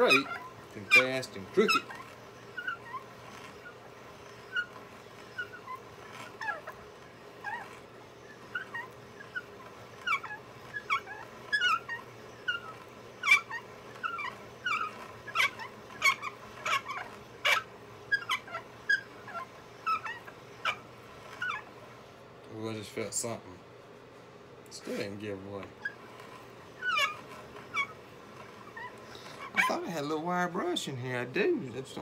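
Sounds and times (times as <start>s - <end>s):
hand drill squeaking in wood: 0.0s - 23.4s, 24.7s - 32.0s.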